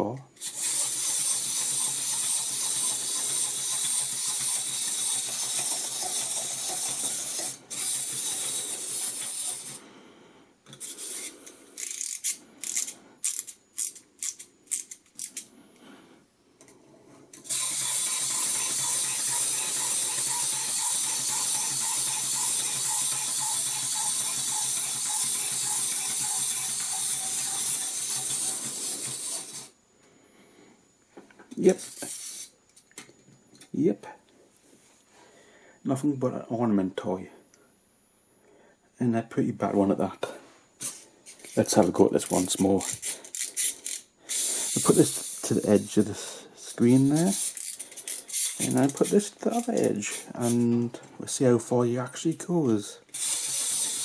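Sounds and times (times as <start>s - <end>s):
clockwork toy buzzing: 0.4s - 9.9s, 10.7s - 15.5s, 17.3s - 29.8s, 31.6s - 32.6s, 40.8s - 50.7s, 53.1s - 54.0s.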